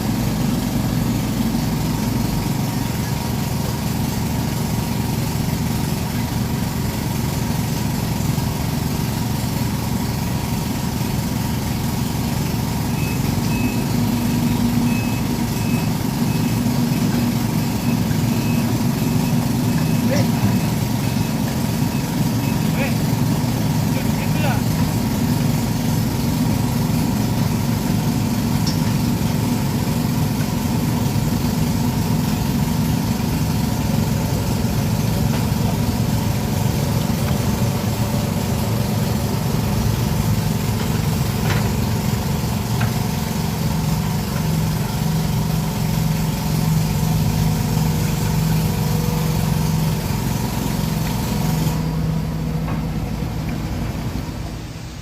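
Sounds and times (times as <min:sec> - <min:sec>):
excavator diesel engine idling: 0:00.0 - 0:55.0.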